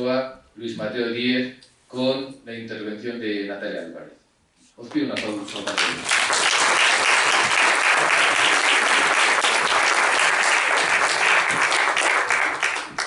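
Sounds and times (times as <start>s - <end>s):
audience applauding: 5.3s - 13.0s.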